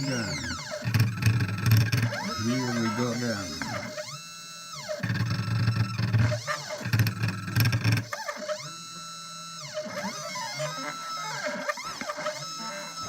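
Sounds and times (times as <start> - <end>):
loud low grinding buzz: 0.0 - 4.2
stepper motors whining: 0.0 - 13.0.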